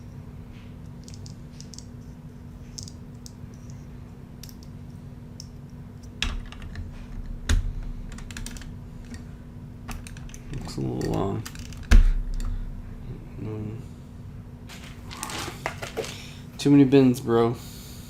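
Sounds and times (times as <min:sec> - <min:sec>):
steady low hum: 0:00.0 - 0:18.0
plastic pieces clicking and rattling: 0:01.0 - 0:01.9, 0:09.9 - 0:12.5.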